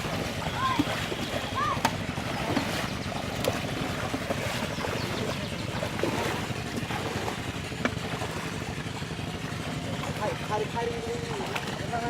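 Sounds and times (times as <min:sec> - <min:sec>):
river water: 0:00.0 - 0:12.0.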